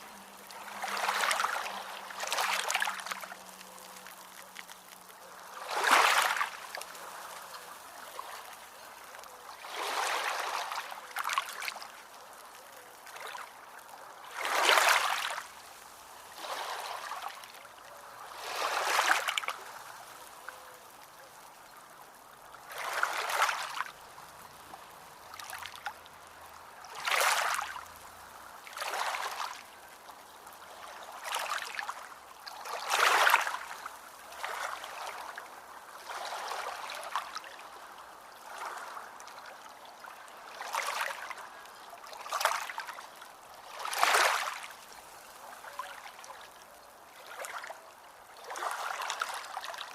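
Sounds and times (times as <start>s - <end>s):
small ocean waves washing in: 0.0s - 49.9s.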